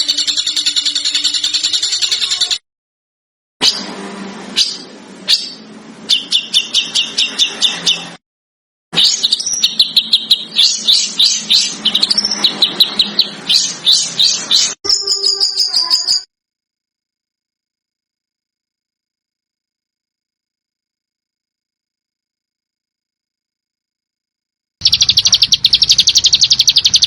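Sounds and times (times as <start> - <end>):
bird whistled song: 0.0 - 2.5, 4.6 - 8.2, 9.0 - 16.3, 24.8 - 27.0
songbird sharp chirps: 4.6 - 8.2, 9.0 - 16.3, 24.8 - 27.0.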